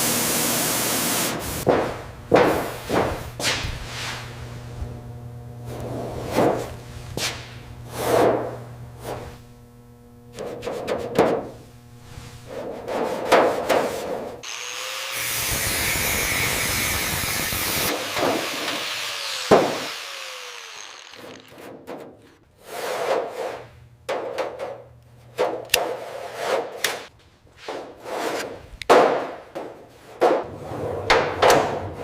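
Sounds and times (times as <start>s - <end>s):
power tool running: 8.6s - 10.6s, 14.4s - 22.4s.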